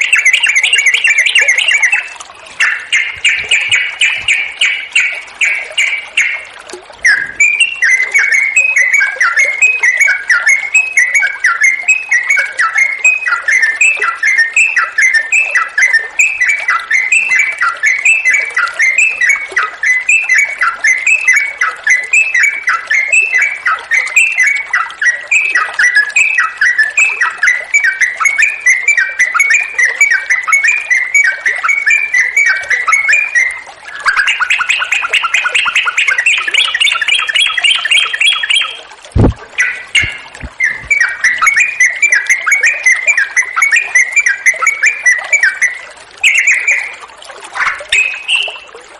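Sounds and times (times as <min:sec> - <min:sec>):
rising bird trill: 0:00.0 - 0:47.0, 0:47.6 - 0:48.7
bird singing repeated phrases: 0:00.0 - 0:48.8.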